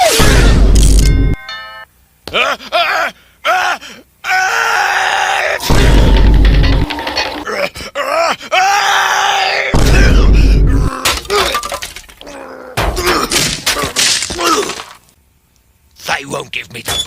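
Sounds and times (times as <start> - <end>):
loud deep boom effect: 5.6 - 6.9.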